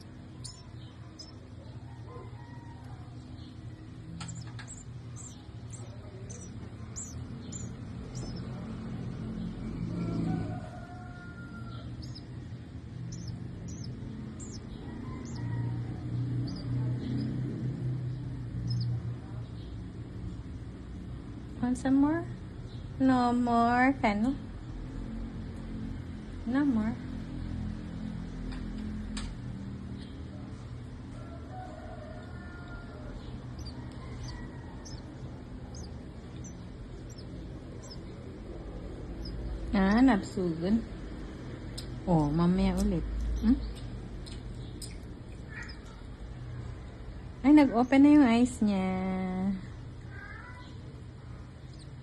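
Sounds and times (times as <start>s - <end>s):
young bird chirping: 0.0s - 20.6s, 32.3s - 40.9s, 41.7s - 46.3s, 51.6s - 52.0s
steady low hum: 0.0s - 52.0s.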